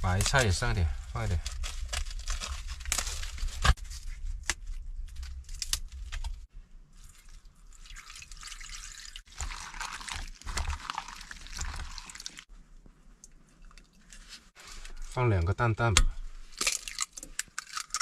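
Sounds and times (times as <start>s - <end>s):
water bubbling and dripping: 7.0s - 12.5s.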